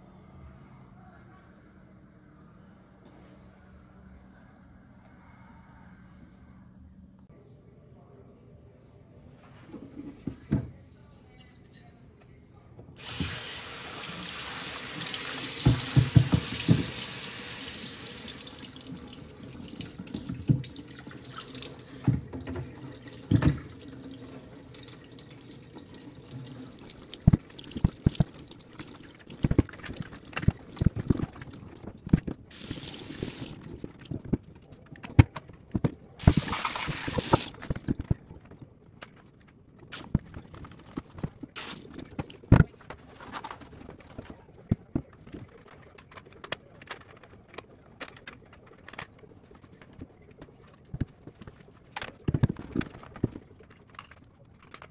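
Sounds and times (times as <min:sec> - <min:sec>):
tap running into sink: 0:13.0 - 0:13.6, 0:14.8 - 0:17.3
hard items clattering: 0:27.1 - 0:54.9.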